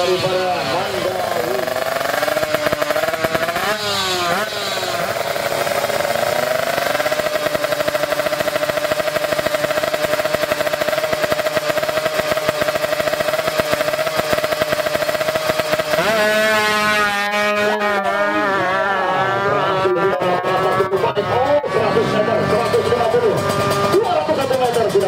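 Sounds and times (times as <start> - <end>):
two-stroke engine revving high: 0.0 - 25.0
engine pops and crackles: 1.9 - 16.4, 22.5 - 25.0.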